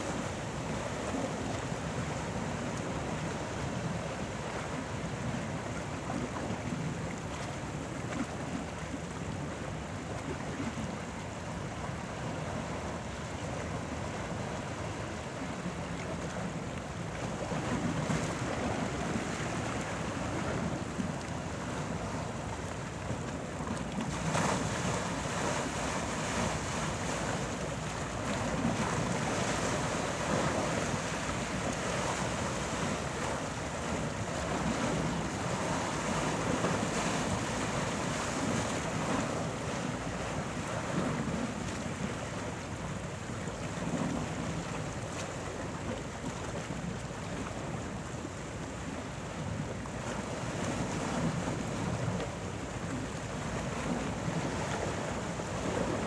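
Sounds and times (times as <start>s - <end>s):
sea waves breaking: 17.1s - 47.8s, 48.5s - 56.0s.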